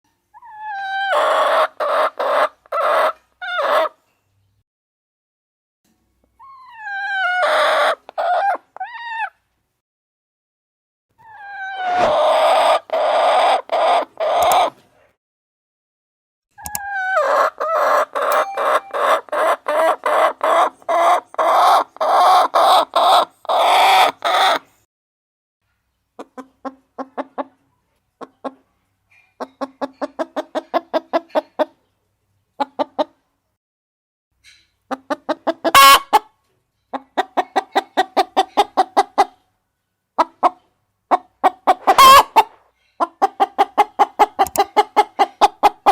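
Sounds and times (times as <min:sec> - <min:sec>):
hen clucking: 0:00.4 - 0:04.0, 0:06.6 - 0:09.3, 0:11.3 - 0:14.8, 0:16.6 - 0:24.7, 0:34.9 - 0:36.3, 0:36.9 - 0:39.4, 0:40.2 - 0:45.9.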